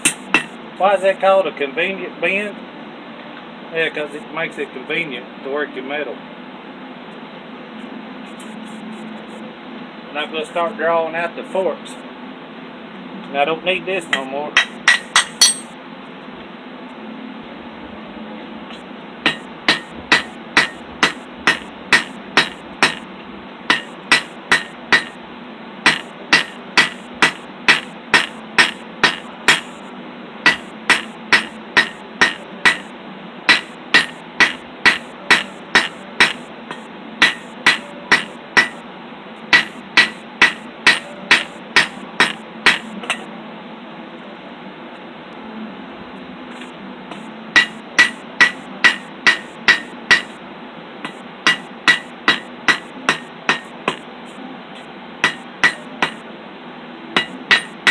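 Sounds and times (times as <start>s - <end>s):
hammer striking steel on anvil: 0.0s - 0.6s, 14.1s - 15.8s, 19.2s - 23.0s, 23.7s - 25.2s, 25.9s - 29.8s, 30.5s - 32.9s, 33.5s - 38.8s, 39.5s - 43.3s, 47.1s - 50.4s, 51.0s - 54.0s, 55.2s - 56.2s, 57.2s - 57.9s.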